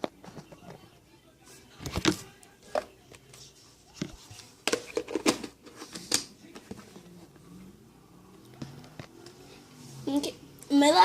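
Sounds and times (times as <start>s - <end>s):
plastic containers clicking and knocking: 4.0s - 6.8s.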